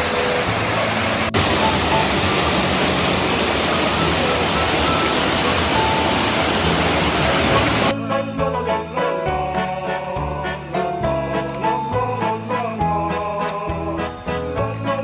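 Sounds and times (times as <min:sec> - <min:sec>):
stream water rushing: 0:00.0 - 0:08.0.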